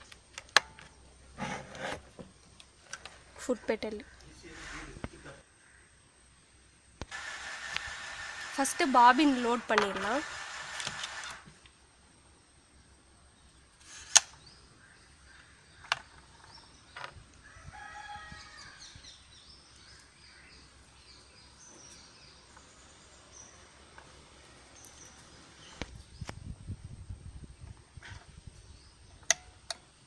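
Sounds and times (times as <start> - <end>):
small birds chirping: 2.2 - 6.7, 12.9 - 26.6, 27.2 - 30.0
rooster crowing: 17.4 - 19.1.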